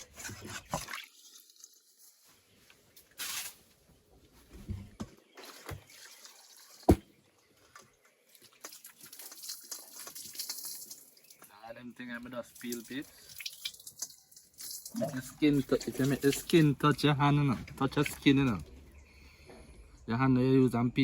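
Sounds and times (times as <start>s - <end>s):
water splashing and dripping: 0.4s - 2.2s, 5.3s - 18.9s.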